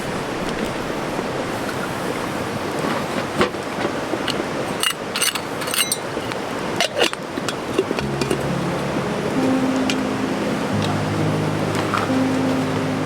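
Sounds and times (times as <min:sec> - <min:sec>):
soft music: 0:08.0 - 0:13.0
steady hiss: 0:08.0 - 0:13.0.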